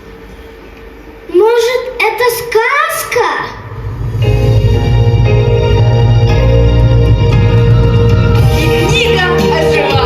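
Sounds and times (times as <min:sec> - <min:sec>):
music with sustained chords: 0:03.8 - 0:10.0.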